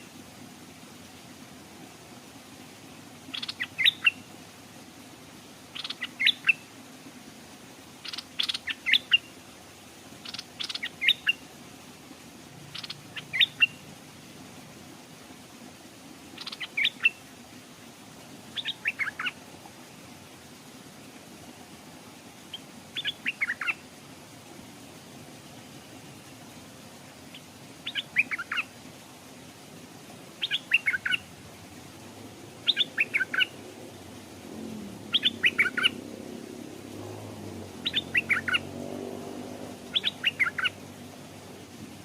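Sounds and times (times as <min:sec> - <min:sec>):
bird singing short phrases: 0:35.1 - 0:36.0.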